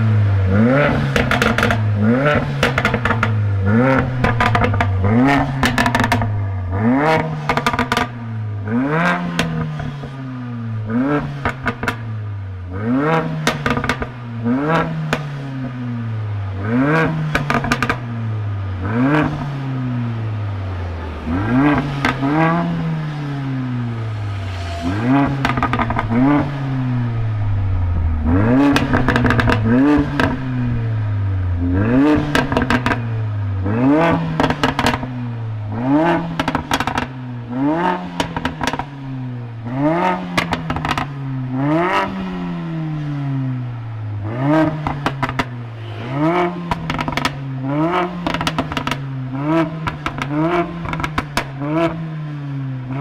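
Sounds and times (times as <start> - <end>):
car engine revving: 0.0 - 52.1
exhaust crackles and pops: 2.6 - 8.2, 27.4 - 35.1, 46.7 - 47.4.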